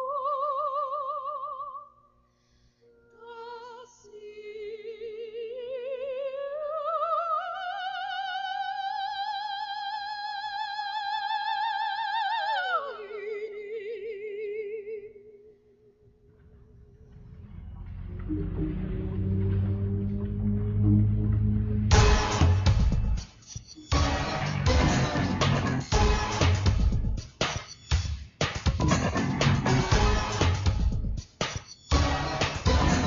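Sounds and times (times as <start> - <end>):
soprano singing with vibrato: 0.0 - 1.9, 3.0 - 15.5.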